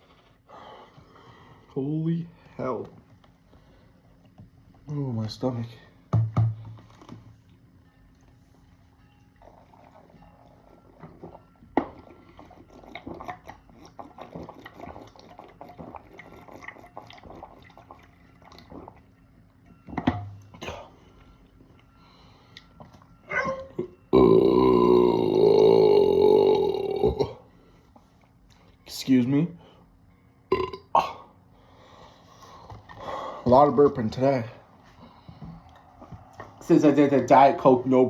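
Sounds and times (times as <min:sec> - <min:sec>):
loud deep burp: 0:23.8 - 0:27.4, 0:30.5 - 0:31.2.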